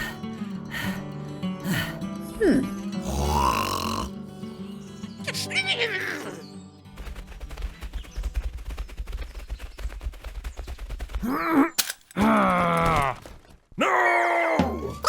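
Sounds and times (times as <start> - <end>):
person grunting and groaning: 1.6 - 4.1, 11.3 - 13.2
rapid gunfire crackle: 6.9 - 13.8.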